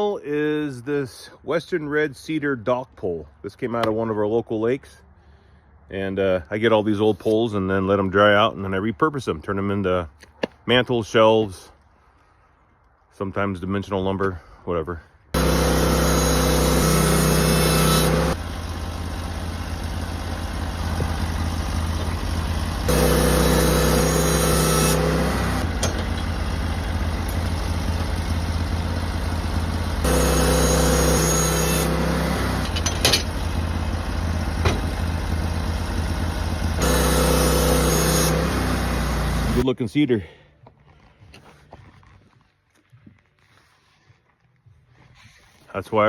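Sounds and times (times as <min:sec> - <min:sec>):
sawmill engine running: 0:15.4 - 0:39.7.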